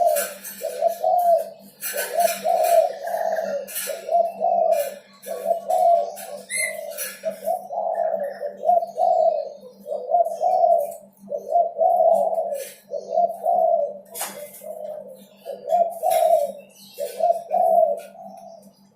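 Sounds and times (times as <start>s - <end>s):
dove cooing: 0.0s - 18.9s.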